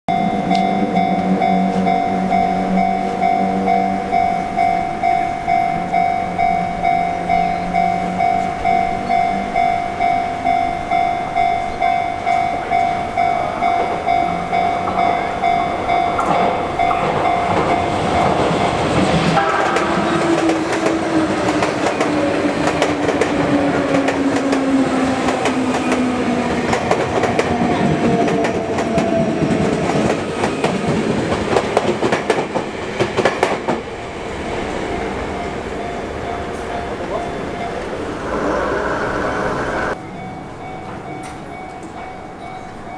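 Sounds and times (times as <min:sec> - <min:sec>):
level crossing bell clanging: 0:00.1 - 0:22.0, 0:34.8 - 0:42.9
train wheels clattering on rails: 0:11.4 - 0:42.9
train motor whine: 0:36.0 - 0:40.0.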